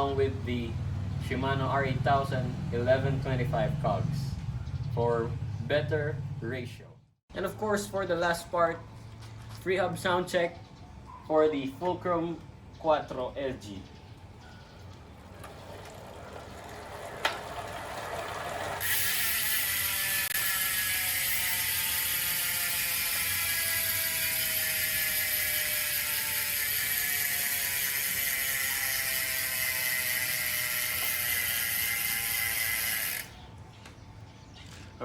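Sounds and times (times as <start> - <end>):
freehub ratcheting buzz: 18.7 - 33.4.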